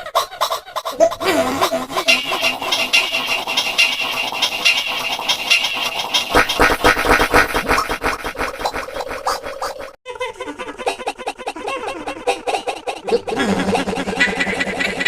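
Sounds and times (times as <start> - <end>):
deep pulsing beat: 1.0 - 9.3
stuttering chopped sound clip: 1.0 - 10.0.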